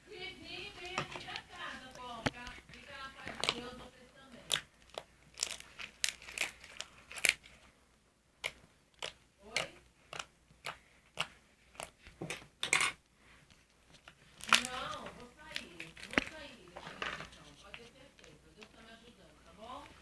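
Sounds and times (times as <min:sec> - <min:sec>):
slime sticky crackles: 0:00.5 - 0:07.7, 0:08.4 - 0:12.2, 0:13.9 - 0:20.0.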